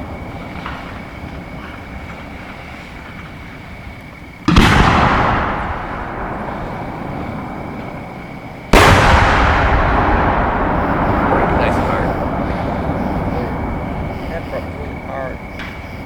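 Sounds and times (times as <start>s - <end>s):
firework shells bursting: 4.4s - 14.4s.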